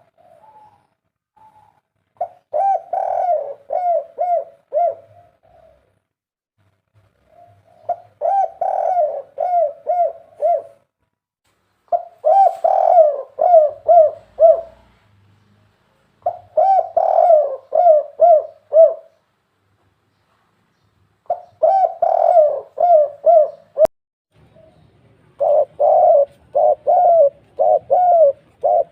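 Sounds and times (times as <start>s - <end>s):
dove cooing: 0.0s - 6.0s, 7.2s - 10.9s, 11.9s - 14.9s, 16.2s - 19.2s, 21.3s - 23.9s, 25.4s - 28.9s.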